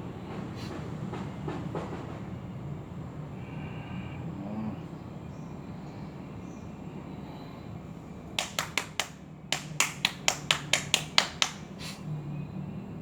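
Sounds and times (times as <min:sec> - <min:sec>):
sharp hand slaps: 0:08.4 - 0:12.0.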